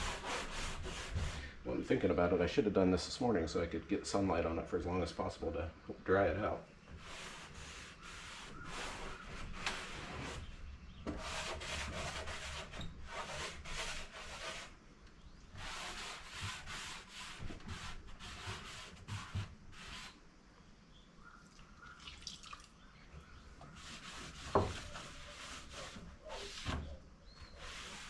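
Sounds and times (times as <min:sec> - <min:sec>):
hand rubbing wooden surface: 0:00.0 - 0:01.5, 0:07.0 - 0:14.7, 0:15.5 - 0:20.2, 0:23.6 - 0:28.0.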